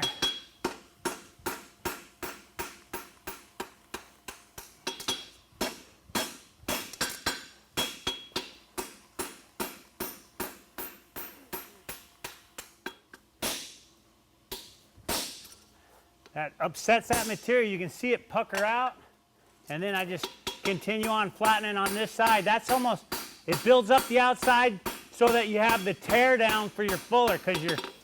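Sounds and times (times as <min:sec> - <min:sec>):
hammer ringing on anvil: 0:00.0 - 0:00.6, 0:20.2 - 0:28.0
dull hammer strike: 0:20.2 - 0:28.0.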